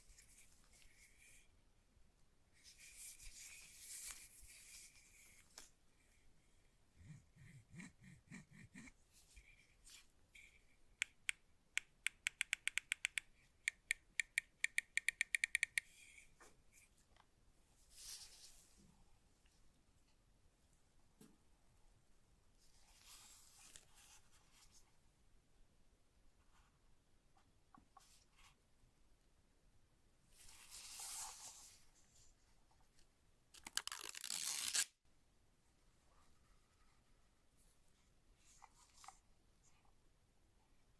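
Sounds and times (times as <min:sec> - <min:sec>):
mouse buttons clicking: 0:11.0 - 0:15.9
packaging being torn open: 0:33.6 - 0:34.9.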